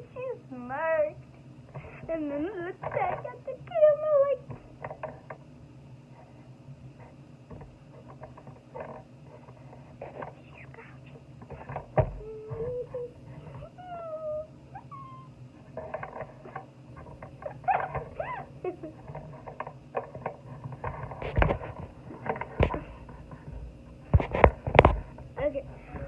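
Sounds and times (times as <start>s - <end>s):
cat meowing: 13.6s - 15.4s.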